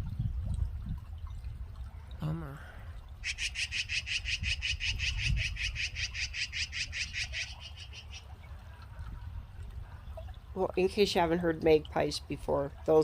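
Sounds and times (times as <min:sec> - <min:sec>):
magpies chattering rattle: 0:03.2 - 0:08.2.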